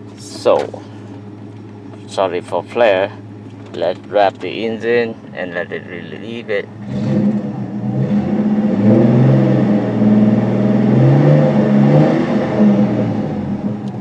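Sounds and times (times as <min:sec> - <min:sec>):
car engine revving: 0:05.5 - 0:14.0.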